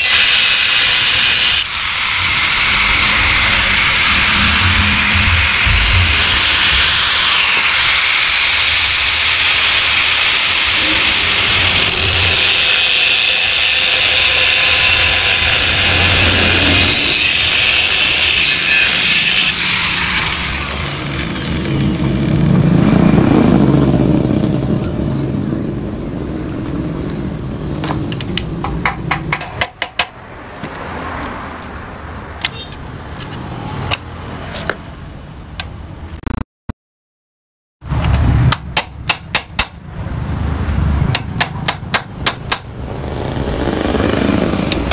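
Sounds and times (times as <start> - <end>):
power tool grinding steel: 0.0 - 22.7
sharp knocks on metal: 28.6 - 30.2, 38.5 - 39.8, 41.1 - 42.7.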